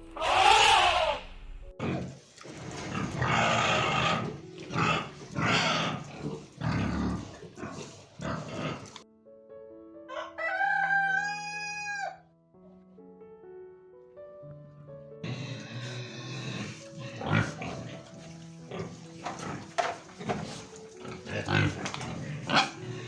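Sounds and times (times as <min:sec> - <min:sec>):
background music: 0:00.0 - 0:23.0
rooster crowing: 0:00.2 - 0:01.2, 0:10.1 - 0:12.2
harsh noisy animal bursts: 0:00.2 - 0:01.3.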